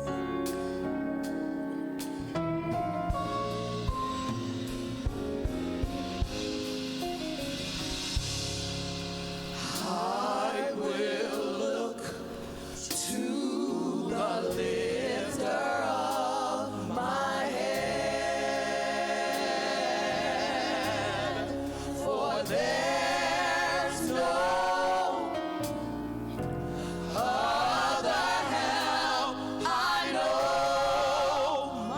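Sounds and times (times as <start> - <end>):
band accompaniment: 0.0 - 10.6
choir singing: 9.6 - 26.0, 26.8 - 31.9.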